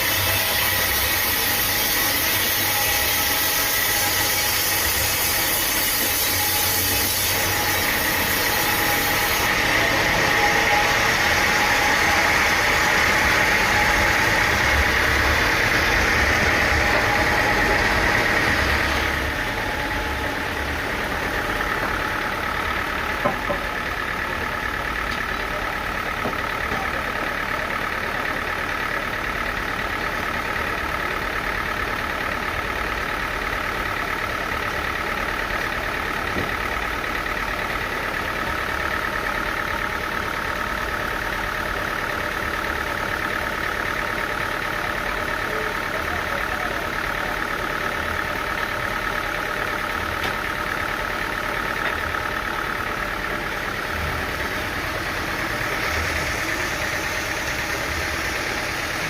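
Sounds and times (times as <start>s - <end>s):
high whine: 0.0s - 27.0s
sawmill machinery hum: 0.0s - 59.0s.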